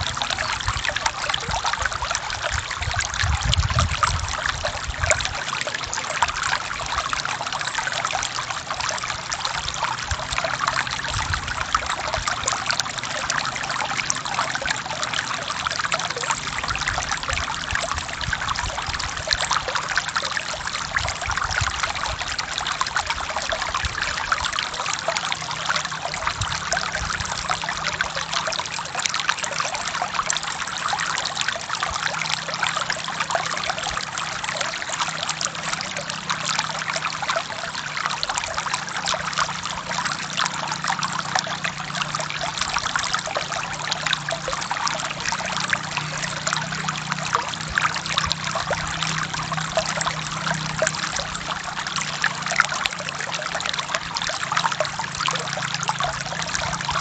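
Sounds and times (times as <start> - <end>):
stream flowing over rocks: 0.0 - 57.0.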